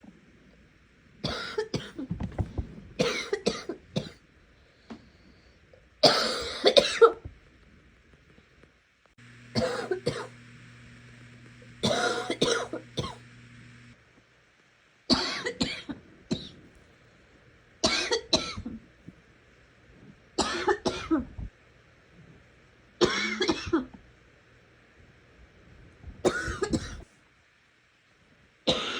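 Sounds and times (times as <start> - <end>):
person coughing: 3.0 - 4.2, 6.0 - 7.3, 9.5 - 10.4, 11.8 - 13.2, 23.0 - 23.9, 26.3 - 27.0, 28.7 - 28.9.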